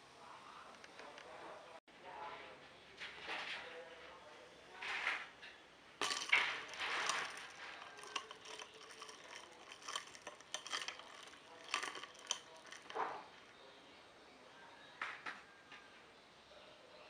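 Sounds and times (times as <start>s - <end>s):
spoon and ice clinking in glass: 6.0s - 13.5s.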